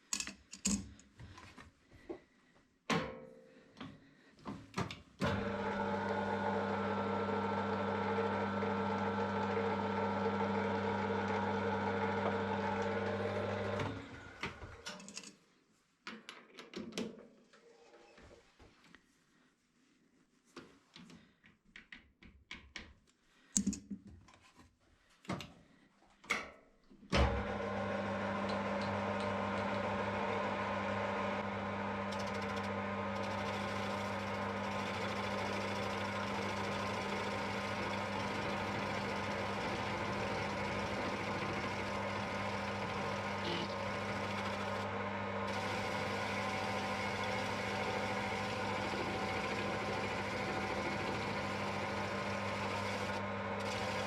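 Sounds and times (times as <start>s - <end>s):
lathe motor humming: 5.2s - 14.4s, 27.3s - 54.0s
handling knocks and clicks: 21.0s - 24.7s.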